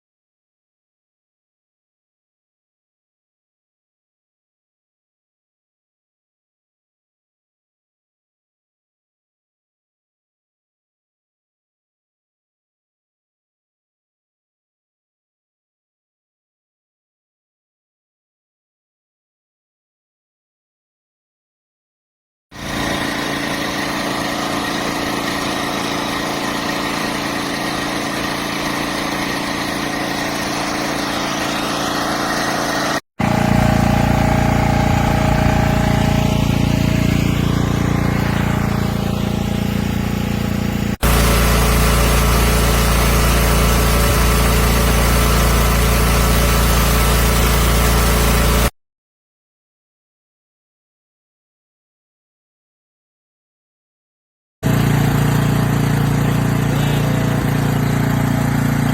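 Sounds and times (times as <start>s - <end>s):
generator engine running: 22.6s - 48.7s, 54.6s - 58.9s.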